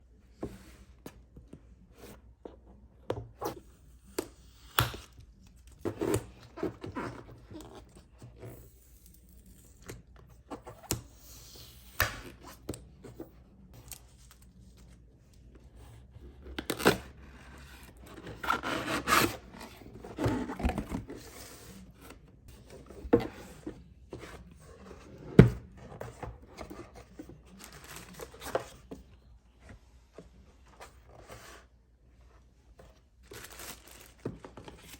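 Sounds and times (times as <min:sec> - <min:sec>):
packaging tearing and rustling: 0:33.2 - 0:34.2.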